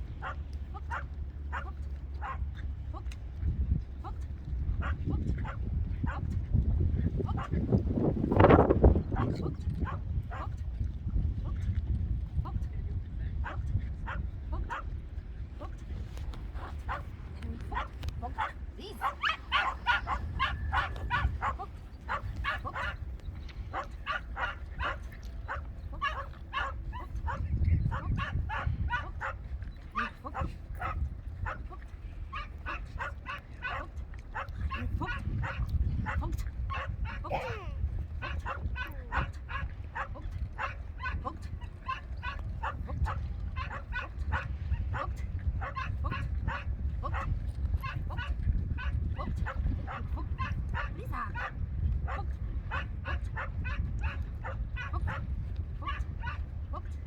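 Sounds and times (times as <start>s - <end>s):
steady low rumble: 0.0s - 57.0s
dog barking rapidly: 0.2s - 2.4s, 16.6s - 17.1s, 17.8s - 29.4s, 38.2s - 41.2s, 41.8s - 55.2s
dog yapping: 17.8s - 23.1s, 23.7s - 29.4s, 38.2s - 42.8s.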